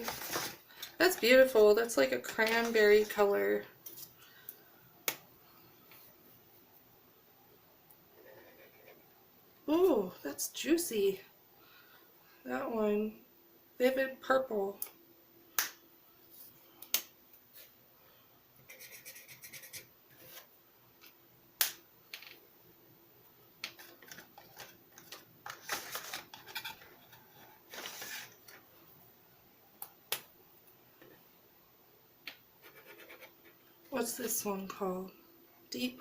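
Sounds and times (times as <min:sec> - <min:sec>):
marker scratching on paper: 0:18.7 - 0:20.5, 0:32.6 - 0:33.6.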